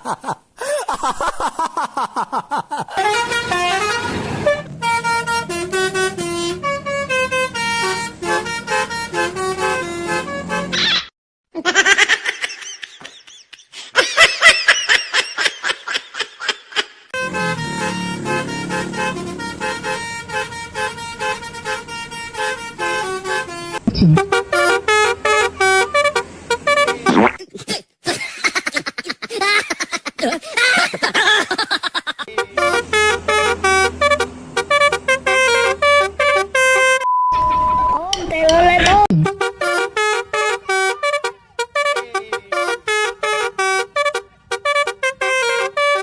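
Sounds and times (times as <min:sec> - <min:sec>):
bus horn playing a tune: 0:02.9 - 0:10.8, 0:17.1 - 0:27.2, 0:32.2 - 0:37.1, 0:39.1 - 0:46.0
high-pitched laughter: 0:10.8 - 0:17.1, 0:27.3 - 0:32.3.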